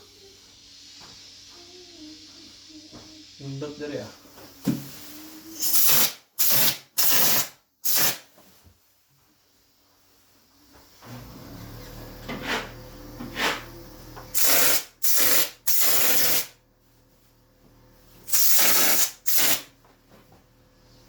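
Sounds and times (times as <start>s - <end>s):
hissing spray bursts: 0.0s - 4.0s, 4.6s - 8.3s, 14.3s - 16.5s, 18.3s - 19.7s.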